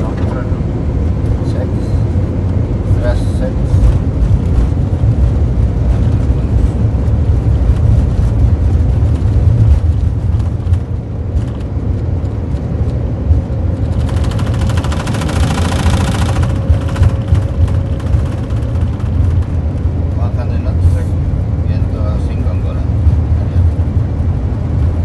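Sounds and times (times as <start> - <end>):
jet engines rumbling: 0.0 - 25.0
rapid even rattle: 13.8 - 19.8.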